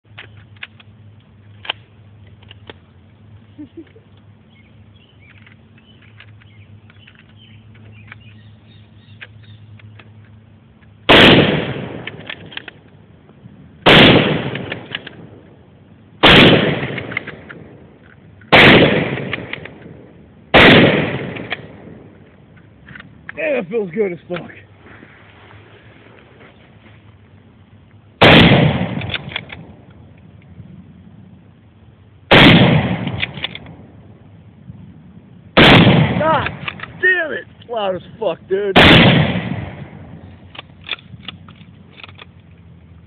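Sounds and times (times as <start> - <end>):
low steady hum: 0.0 - 43.0
rifle shots with ringing echo: 11.0 - 12.8, 13.8 - 15.6, 16.2 - 22.2, 28.2 - 29.9, 32.3 - 34.1, 35.6 - 37.0, 38.7 - 41.4.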